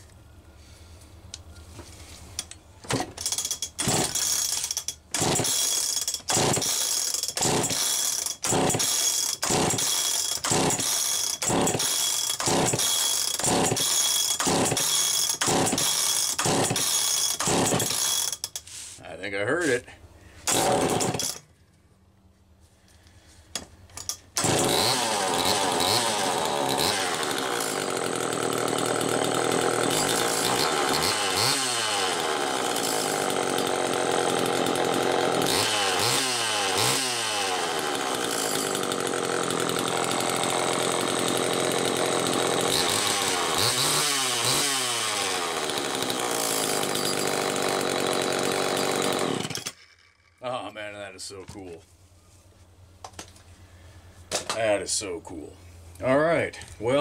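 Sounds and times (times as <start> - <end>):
chainsaw engine running: 3.1 - 18.4, 20.5 - 21.4, 24.4 - 50.4.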